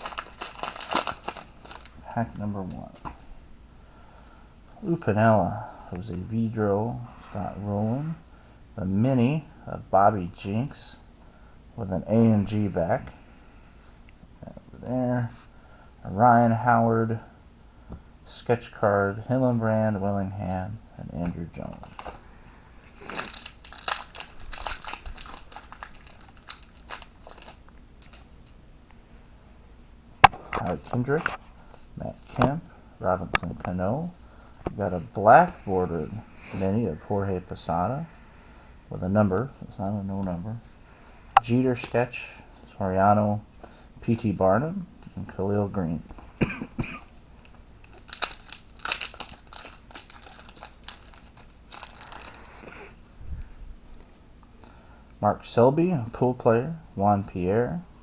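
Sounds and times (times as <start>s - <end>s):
wrapper crackling: 0.0s - 2.0s, 21.7s - 22.2s, 22.9s - 28.3s, 47.8s - 52.8s.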